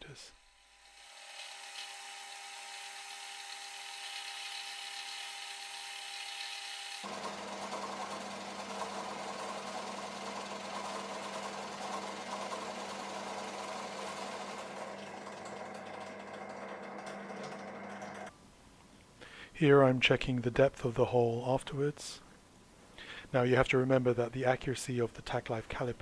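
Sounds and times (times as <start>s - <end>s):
drill press running: 0.4s - 18.3s.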